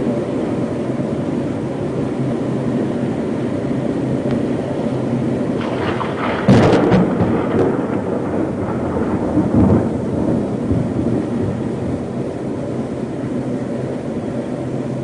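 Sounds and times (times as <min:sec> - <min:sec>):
storm wind rushing: 0:00.1 - 0:14.0
thunder crack and rumble: 0:05.5 - 0:12.6.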